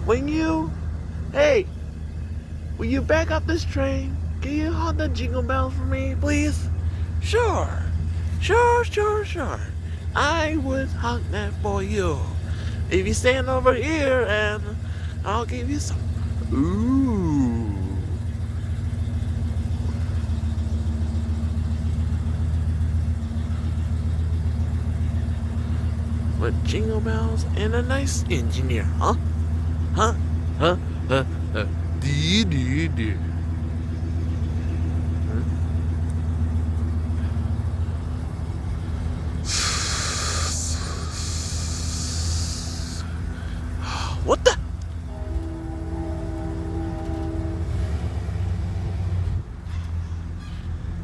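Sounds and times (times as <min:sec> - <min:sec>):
locomotive diesel engine humming: 0:00.0 - 0:51.0
air brake hissing: 0:39.4 - 0:44.2.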